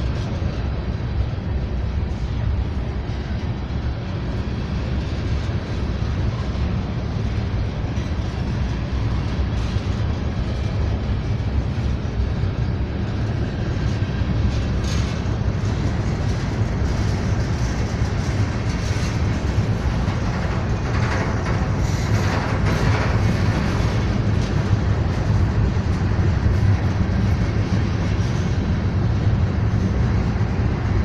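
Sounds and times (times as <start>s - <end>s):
freight train wheels rumbling: 0.0s - 31.0s
train wheels clacking: 0.0s - 31.0s.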